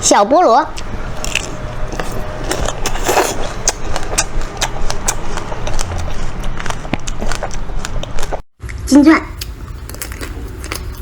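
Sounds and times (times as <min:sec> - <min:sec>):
ice cream wrapper crackling: 0:00.7 - 0:08.4.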